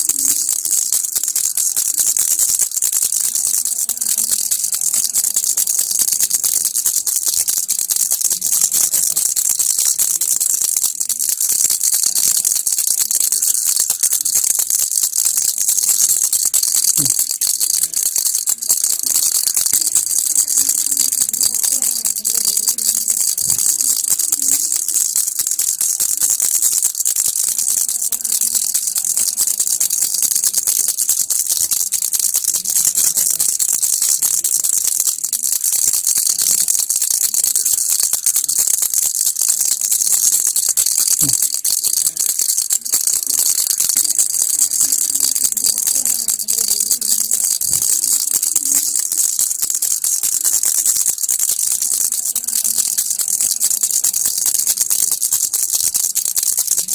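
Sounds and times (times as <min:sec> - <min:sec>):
baby rattle shaking: 0:00.0 - 0:56.9.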